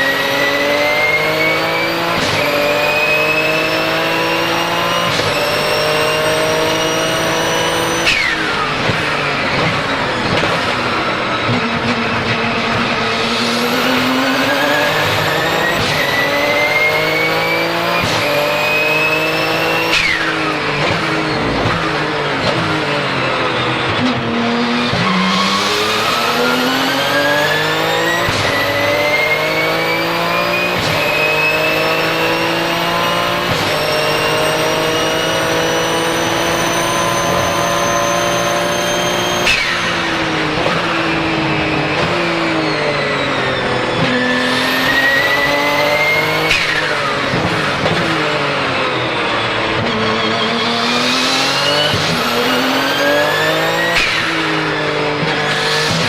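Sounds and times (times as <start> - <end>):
turbo whistle: 0.0 - 4.2, 13.1 - 22.0, 25.0 - 47.2, 48.8 - 56.0
race car engine at full throttle: 0.0 - 56.0.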